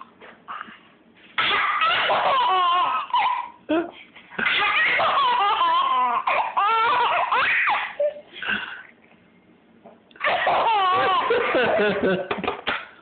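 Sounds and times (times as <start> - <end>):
small child laughing: 1.5 - 3.6, 4.4 - 8.3, 10.2 - 12.5.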